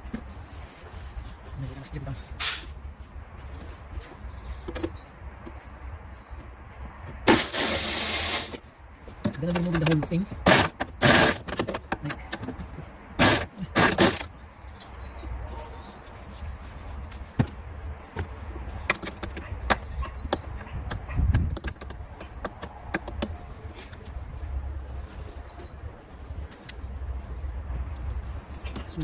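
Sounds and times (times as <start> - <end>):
birds chirping: 0.0 - 29.0
tool clicks and knocks: 9.2 - 14.3, 18.2 - 23.4.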